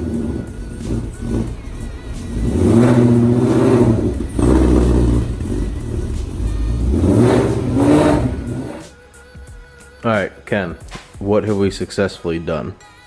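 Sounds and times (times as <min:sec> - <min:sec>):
car engine revving: 0:00.0 - 0:08.9.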